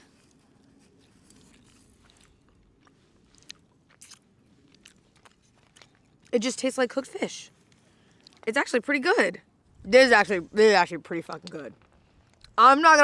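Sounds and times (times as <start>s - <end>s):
quiet chewing: 0.0s - 8.5s, 11.2s - 12.6s.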